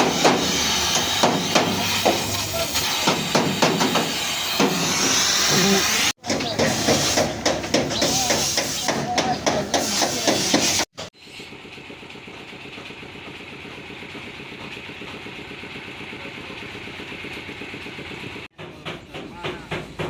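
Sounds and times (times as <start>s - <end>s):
small engine idling: 11.0s - 18.5s.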